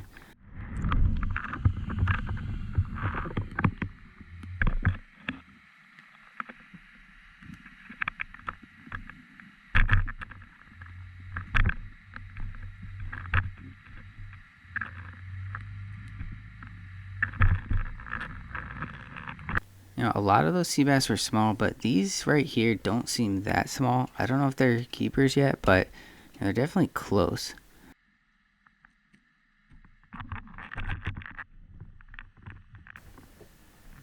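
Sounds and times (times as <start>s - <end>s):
muffled underwater rumble: 0.0s - 5.5s, 9.6s - 20.0s.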